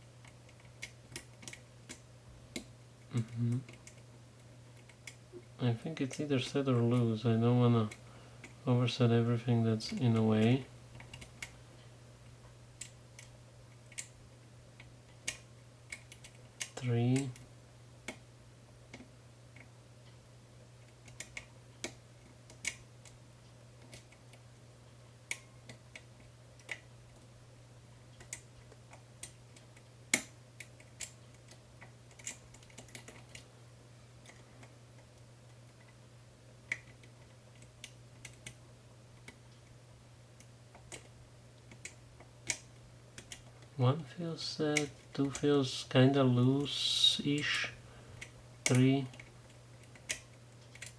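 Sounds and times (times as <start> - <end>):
lock pick metallic clicks: 48.2 - 50.9.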